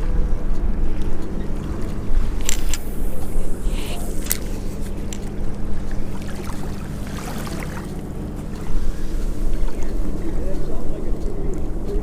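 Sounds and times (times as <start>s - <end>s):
motor humming: 0.0s - 12.0s
sharp clicks: 0.4s - 12.0s.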